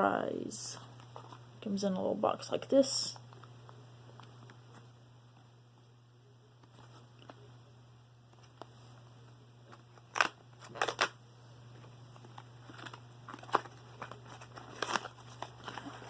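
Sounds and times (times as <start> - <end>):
packaging crackling and rustling: 9.6 - 16.0.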